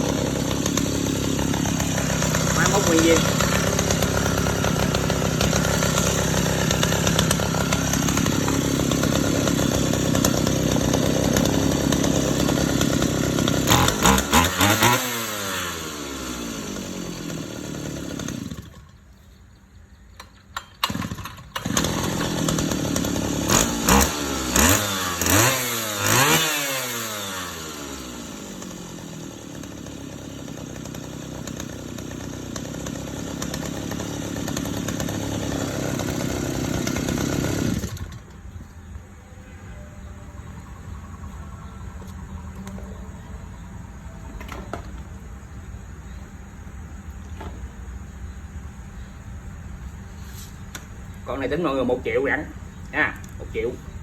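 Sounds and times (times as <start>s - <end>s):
brush cutter engine revving: 0.0s - 19.0s, 20.2s - 38.9s, 50.8s - 54.0s.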